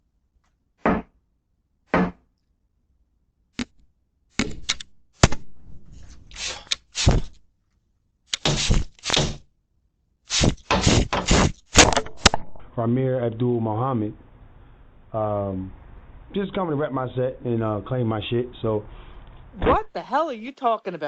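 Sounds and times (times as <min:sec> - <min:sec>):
heavy knocks on a door: 0:00.9 - 0:01.1.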